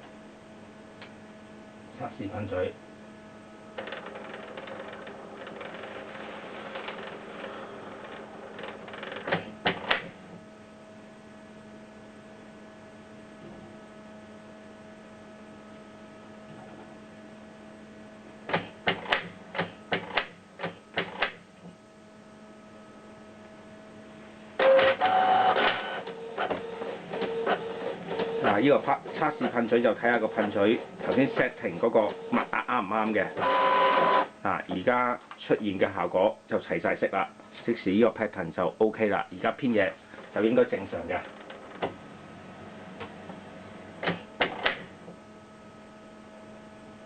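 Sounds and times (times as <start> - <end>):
printer motor hum: 3.7 - 10.5, 23.2 - 35.0
printer mechanism noise: 3.8 - 10.2, 18.5 - 21.4, 24.6 - 34.9, 40.2 - 42.0, 42.9 - 45.2.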